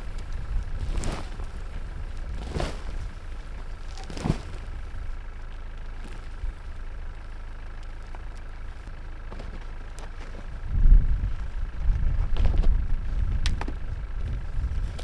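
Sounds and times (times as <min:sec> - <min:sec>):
dull thump: 0:00.0 - 0:04.9
vehicle low rumble: 0:00.0 - 0:15.0.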